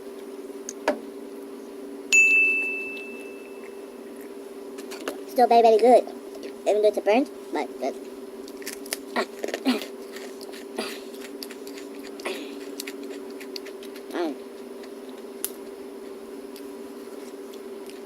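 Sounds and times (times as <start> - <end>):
steady low hum: 0.0 - 18.0
person chewing crunchy crust: 8.0 - 18.0.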